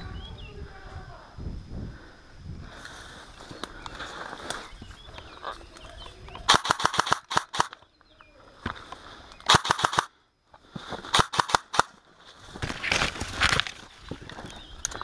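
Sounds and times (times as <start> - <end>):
airsoft guns firing bursts: 6.4 - 7.8, 9.5 - 10.1, 11.1 - 12.0.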